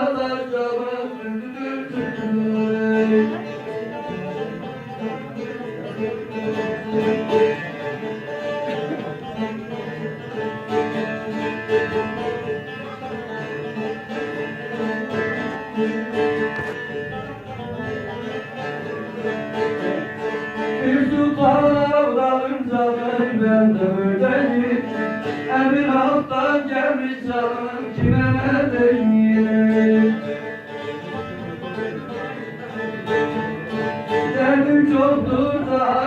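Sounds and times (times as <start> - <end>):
long-necked lute plucked melody: 0.0 - 36.0.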